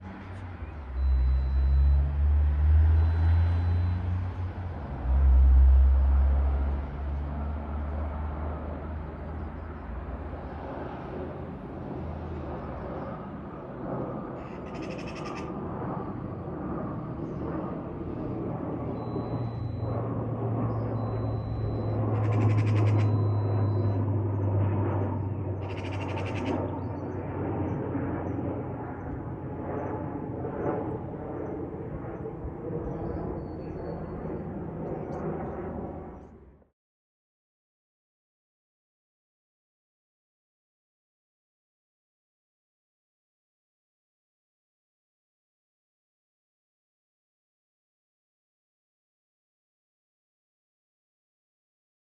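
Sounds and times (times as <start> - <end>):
turboprop engines running: 0.0 - 36.7.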